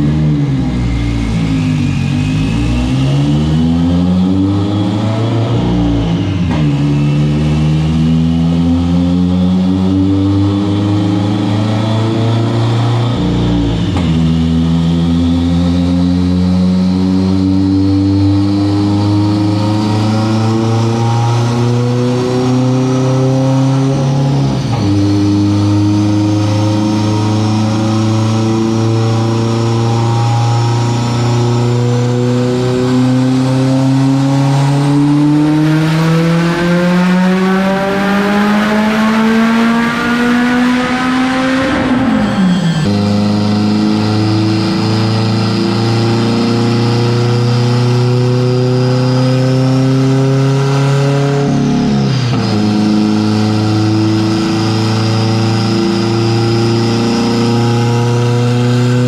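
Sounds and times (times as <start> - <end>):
turbo whine: 0.0 - 16.5, 38.9 - 48.6
car engine revving on a dyno: 0.0 - 59.0.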